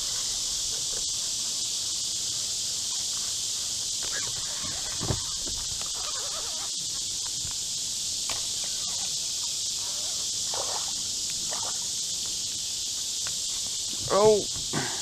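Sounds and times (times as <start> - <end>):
insect chorus buzzing: 0.0 - 15.0
faint chirps and clicks: 4.0 - 7.6, 8.2 - 12.5, 13.1 - 13.9.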